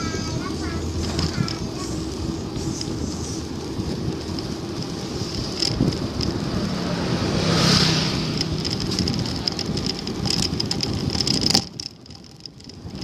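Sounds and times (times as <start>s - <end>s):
road rumble: 0.0s - 13.0s
wind buffeting microphone: 0.0s - 13.0s
whoosh: 6.0s - 8.9s.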